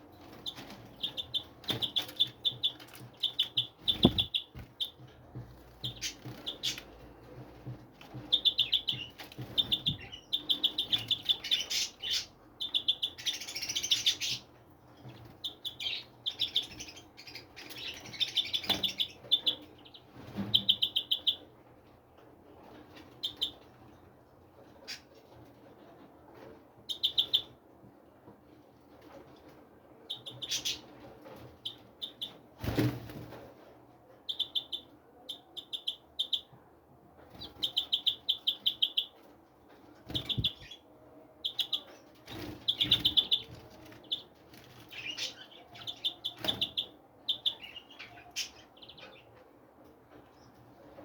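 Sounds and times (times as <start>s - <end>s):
small birds chirping: 0.0s - 21.5s, 23.2s - 23.7s, 26.9s - 27.6s, 30.1s - 33.0s, 34.3s - 36.6s, 37.3s - 39.3s, 40.0s - 49.4s.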